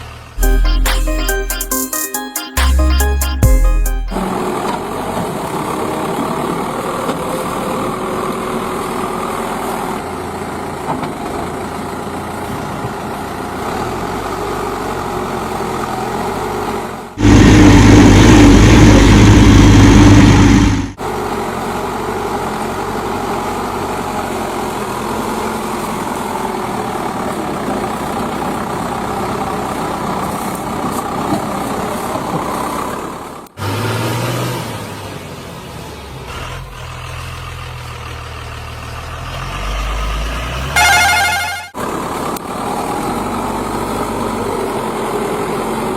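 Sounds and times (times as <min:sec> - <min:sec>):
heavy diesel engines running: 0:00.0 - 0:01.7, 0:02.6 - 0:45.9
loud pitched tone: 0:00.4 - 0:04.7, 0:40.8 - 0:41.8
loud engine burst: 0:17.2 - 0:21.0.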